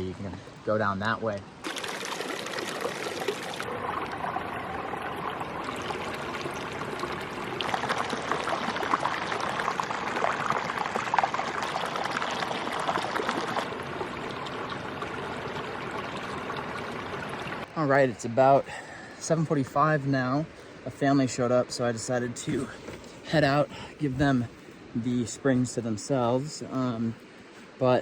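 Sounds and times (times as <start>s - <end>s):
water pouring between pools: 1.6s - 17.8s.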